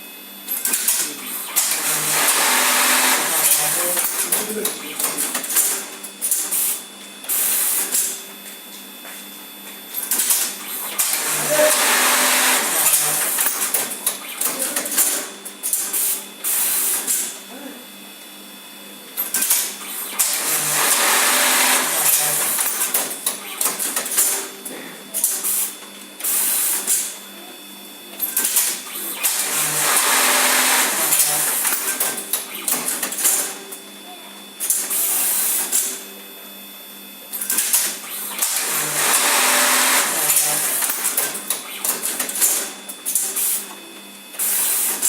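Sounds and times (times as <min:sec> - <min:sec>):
sewing machine stitching: 0:00.6 - 0:05.8, 0:10.1 - 0:16.1, 0:19.4 - 0:24.4, 0:28.3 - 0:33.5, 0:37.6 - 0:43.6.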